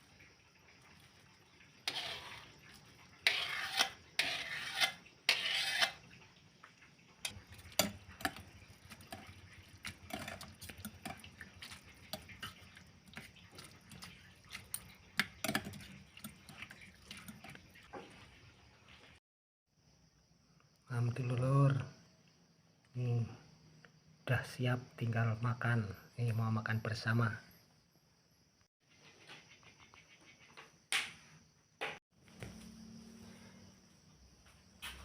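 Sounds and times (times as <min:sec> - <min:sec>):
metal utensils scraping a pan: 0:01.8 - 0:06.2, 0:07.2 - 0:18.0.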